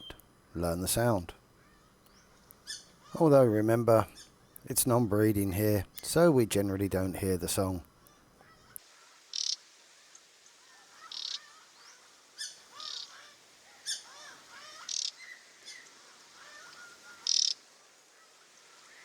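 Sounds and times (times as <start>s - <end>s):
other birds chirping: 0.8s - 6.2s, 8.0s - 19.0s
bird giving dry rattling calls: 9.3s - 9.6s, 11.0s - 11.6s, 12.4s - 14.1s, 14.7s - 16.0s, 16.6s - 17.7s.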